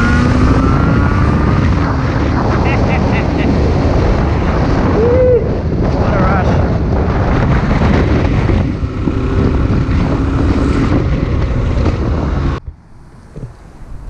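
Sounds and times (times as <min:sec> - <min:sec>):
wind noise on microphone: 0:00.0 - 0:14.0.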